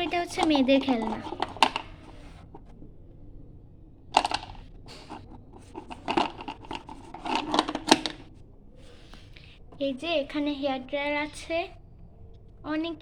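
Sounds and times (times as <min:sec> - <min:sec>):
plastic toys clicking and clattering: 0:00.0 - 0:02.7, 0:04.1 - 0:08.4
toy pieces scraping and rustling: 0:00.0 - 0:02.7, 0:04.2 - 0:09.4.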